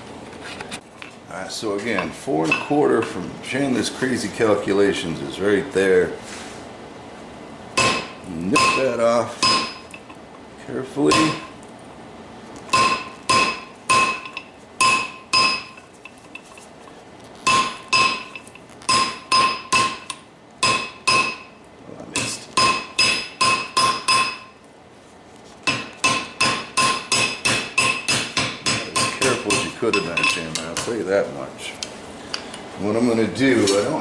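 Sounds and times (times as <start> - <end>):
hammer striking steel on anvil: 7.8 - 10.0, 11.1 - 11.5, 12.7 - 15.8, 17.5 - 21.6, 22.2 - 24.6, 25.7 - 30.9.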